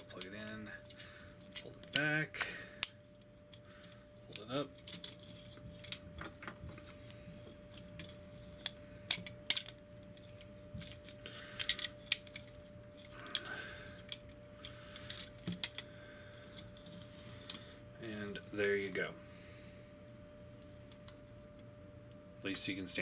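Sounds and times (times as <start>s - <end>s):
faint steady hum: 0.0s - 23.0s
plastic toy parts clicking: 8.0s - 9.8s, 11.6s - 12.5s.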